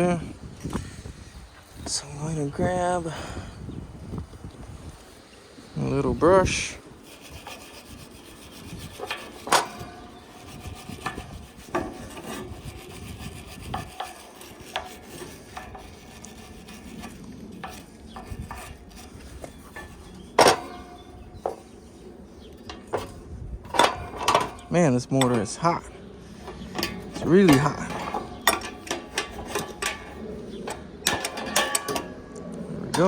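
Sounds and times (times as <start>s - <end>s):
brush scrubbing metal: 5.8s - 33.0s
metallic clicks and knocks: 22.5s - 25.8s, 26.4s - 33.0s.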